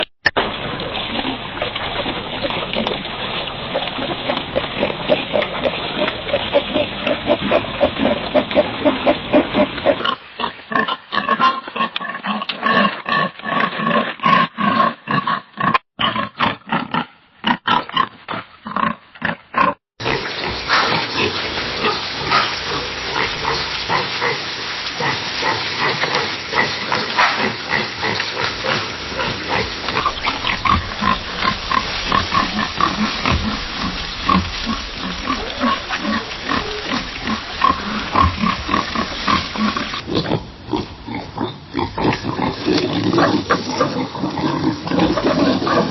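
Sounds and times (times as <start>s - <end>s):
pigs grunting and oinking: 0.0s - 45.9s
steady hiss: 20.0s - 44.9s.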